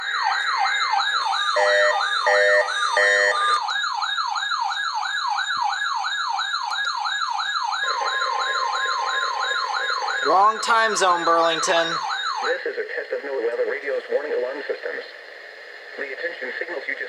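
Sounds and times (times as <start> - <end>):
siren tone sweeping down: 7.6 - 12.5.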